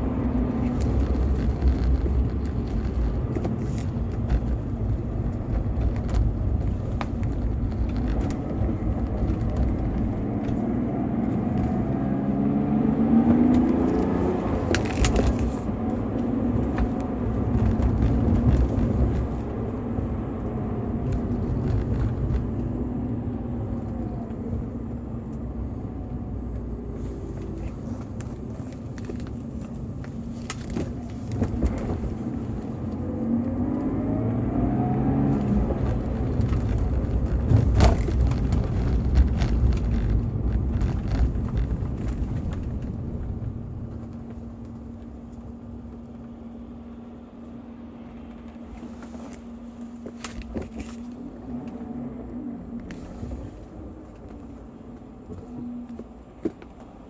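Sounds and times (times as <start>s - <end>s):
car engine revving: 0.0s - 56.3s.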